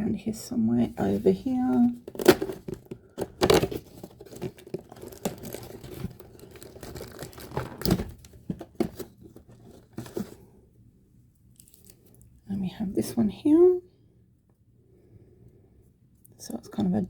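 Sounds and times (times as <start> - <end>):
cardboard crinkling and scraping: 0.9 - 10.5
cardboard tearing: 2.0 - 10.3.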